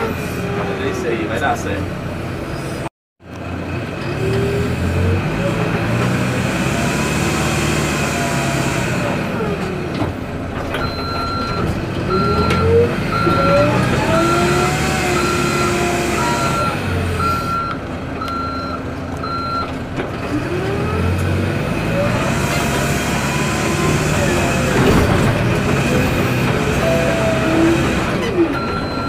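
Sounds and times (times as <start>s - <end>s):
backhoe diesel engine working: 0.0s - 29.0s
reversing alarm beeps: 10.8s - 19.6s, 28.6s - 29.0s.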